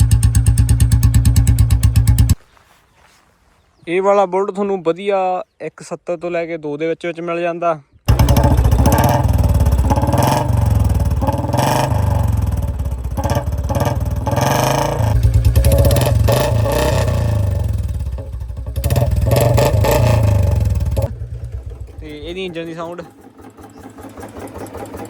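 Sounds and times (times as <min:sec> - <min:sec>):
motorcycle engine revving loudly: 0:00.0 - 0:02.4, 0:08.1 - 0:25.0.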